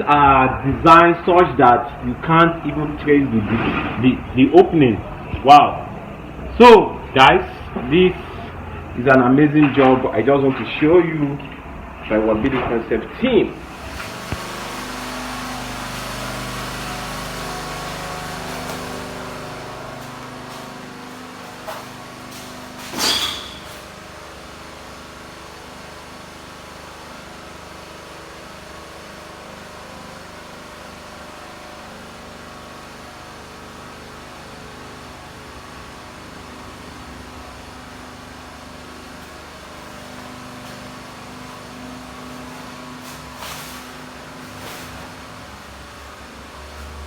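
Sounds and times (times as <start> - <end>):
mechanical hum of motor: 0.0 - 47.0.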